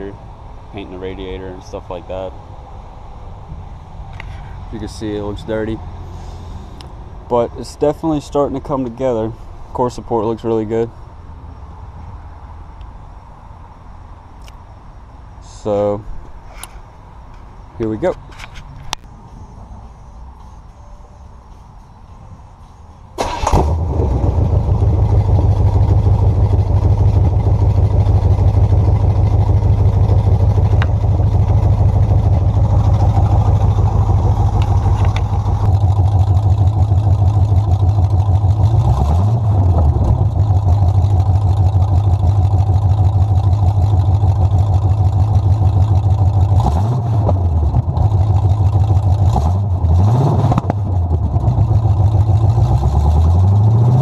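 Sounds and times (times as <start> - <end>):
car engine starting and idling: 17.8 - 54.0
engine revving: 23.2 - 54.0.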